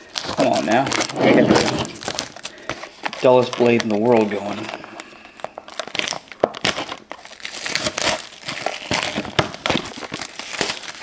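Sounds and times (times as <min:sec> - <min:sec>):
plastic wrapper crinkling: 0:00.0 - 0:11.0.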